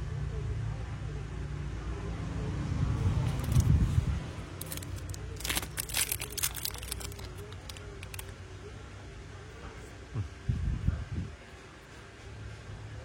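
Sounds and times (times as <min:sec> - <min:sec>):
low vehicle rumble: 0:00.0 - 0:11.4
small objects clicking and crackling: 0:03.3 - 0:03.7, 0:04.6 - 0:08.4.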